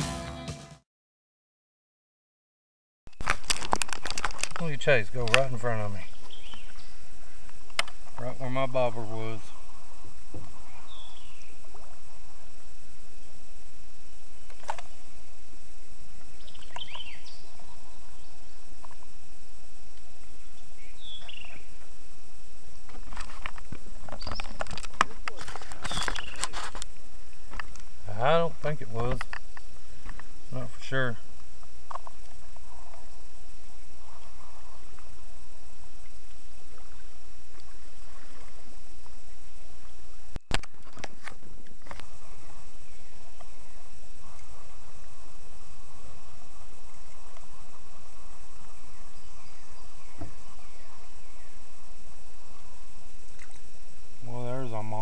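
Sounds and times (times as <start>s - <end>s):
background hiss: 3.2s - 55.0s
kayak on flowing water: 3.2s - 55.0s
songbird chirps: 4.6s - 7.5s, 8.2s - 12.0s, 16.2s - 18.6s, 20.2s - 21.9s, 24.1s - 24.7s, 25.8s - 26.6s.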